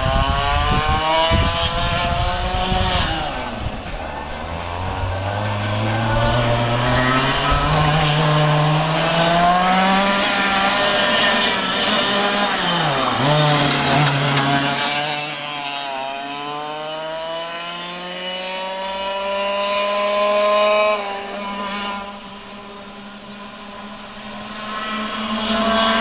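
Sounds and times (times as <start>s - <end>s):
racing kart engine: 0.0s - 26.0s.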